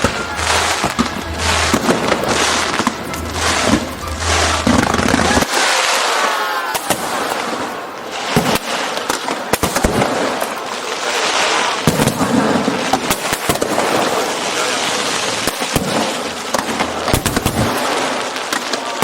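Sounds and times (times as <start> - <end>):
falling firework whistles: 0.0 - 10.6
fireworks crackling bursts: 0.0 - 19.0
sharp firework bangs: 0.0 - 19.0.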